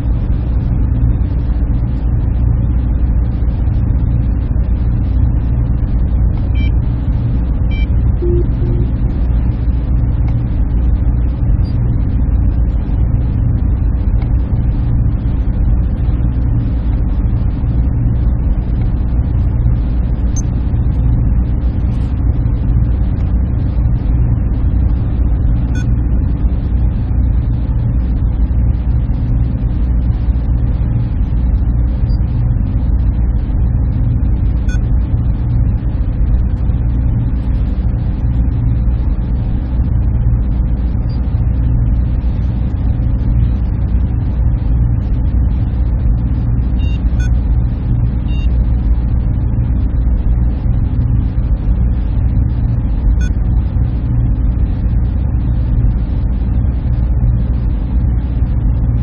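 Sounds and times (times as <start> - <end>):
hum of machines and cooling fans: 0.0 - 59.0
faint high-pitched blips: 7.7 - 9.0.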